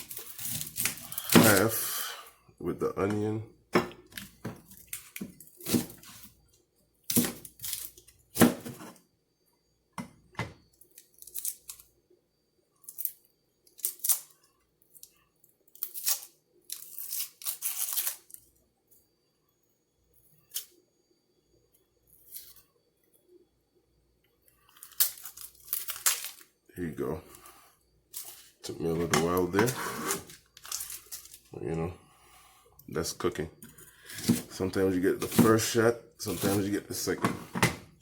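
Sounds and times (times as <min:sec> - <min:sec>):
onion tearing and crackling: 0:00.0 - 0:01.9, 0:11.0 - 0:11.9, 0:12.9 - 0:14.4, 0:15.7 - 0:18.4, 0:24.7 - 0:26.5.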